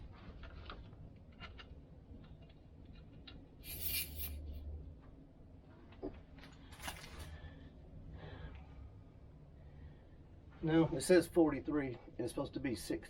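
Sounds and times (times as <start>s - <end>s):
small clicks and rubbing: 0.0s - 4.4s
air hissing: 3.6s - 4.4s.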